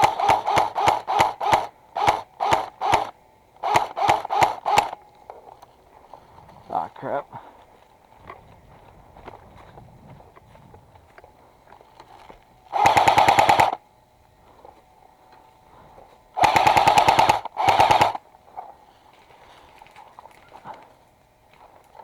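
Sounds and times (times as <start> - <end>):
airsoft gun firing bursts: 0.0 - 5.0, 12.7 - 13.8, 16.4 - 18.2.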